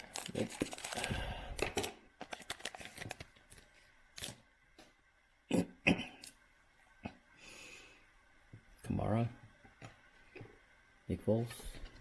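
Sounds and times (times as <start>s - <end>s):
wrapper tearing and crinkling: 0.0s - 3.6s.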